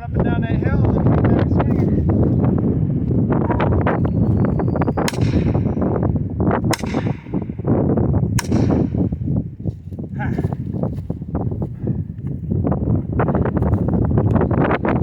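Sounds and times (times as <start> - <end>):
wind buffeting microphone: 0.0 - 15.0
axe striking metal wedge: 5.0 - 6.0, 6.7 - 7.5, 8.4 - 9.2.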